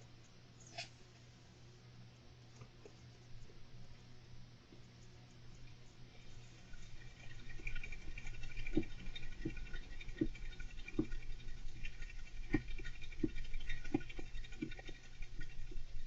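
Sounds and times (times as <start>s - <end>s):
low steady hum: 0.0s - 16.0s
hamster scratching and rustling: 5.8s - 16.0s.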